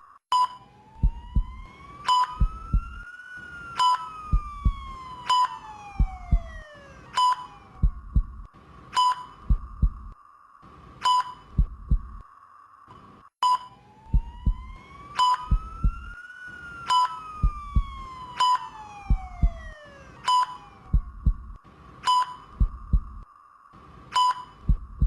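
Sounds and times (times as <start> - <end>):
patient monitor beeping: 0.3 - 3.0, 3.8 - 10.2, 11.0 - 12.2, 13.4 - 16.2, 16.9 - 23.2, 24.1 - 25.0
siren-like tone: 0.3 - 10.2, 12.9 - 23.2
heartbeat thumps: 1.0 - 3.0, 4.3 - 5.1, 5.9 - 6.7, 7.7 - 8.5, 9.4 - 10.2, 11.5 - 12.2, 14.1 - 16.2, 17.4 - 18.2, 19.0 - 19.8, 20.8 - 21.6, 22.5 - 23.3, 24.6 - 25.0.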